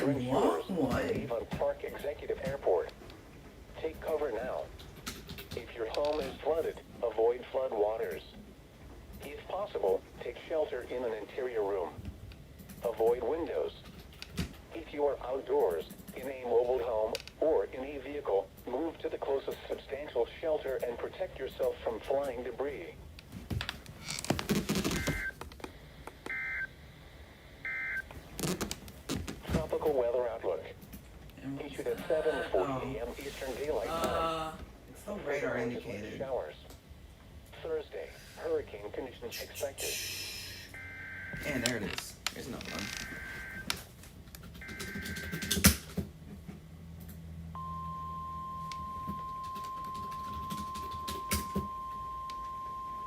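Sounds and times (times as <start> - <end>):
steady warning alarm tone: 24.9 - 25.3, 40.7 - 41.7, 43.0 - 43.7, 44.6 - 45.6, 47.6 - 53.0
radio static: 31.6 - 34.2.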